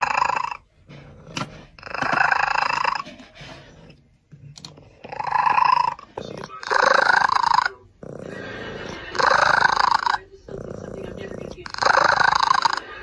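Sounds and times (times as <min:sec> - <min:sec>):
cat making harsh calls: 0:05.1 - 0:06.0.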